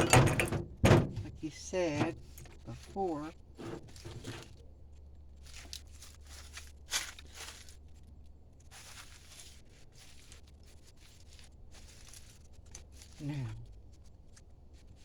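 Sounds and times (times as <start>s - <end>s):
rustling of parts and tools: 0.0s - 7.8s.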